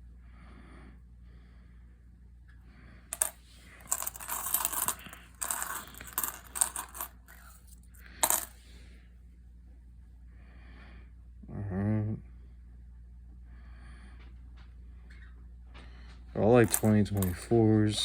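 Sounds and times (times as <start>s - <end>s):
coins clinking and rattling: 3.2s - 8.6s, 16.6s - 18.0s.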